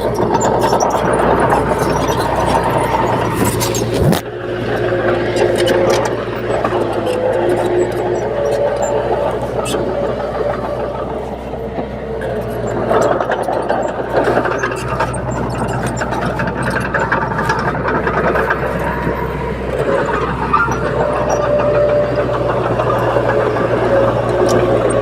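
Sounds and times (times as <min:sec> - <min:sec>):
bulldozer diesel engine running: 0:00.0 - 0:25.0.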